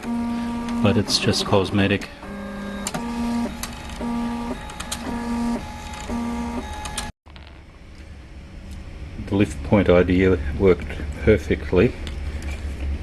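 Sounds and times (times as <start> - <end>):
stepper motors whining: 0.0 - 7.1
room hum: 0.0 - 13.0.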